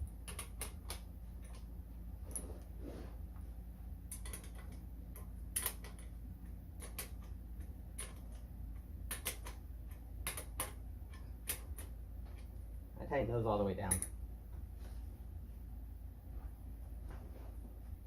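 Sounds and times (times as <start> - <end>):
low hum: 0.0 - 18.0
metal hardware clicking: 4.1 - 6.1, 9.1 - 12.5, 13.9 - 14.2.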